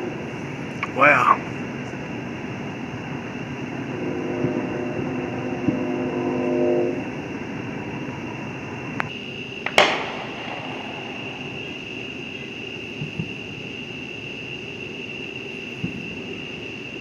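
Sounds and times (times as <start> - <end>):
outdoor background noise: 0.0 - 17.0
horn chord: 3.9 - 7.2
firework bang: 9.6 - 13.5.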